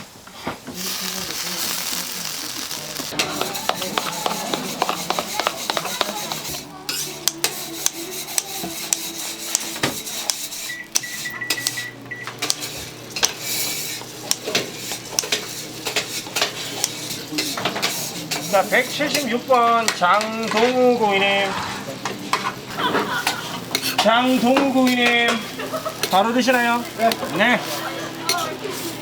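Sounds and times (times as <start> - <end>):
food sizzling: 0.0 - 29.0
metal utensils clattering on pans: 1.6 - 29.0
high beeping tone: 10.6 - 12.3.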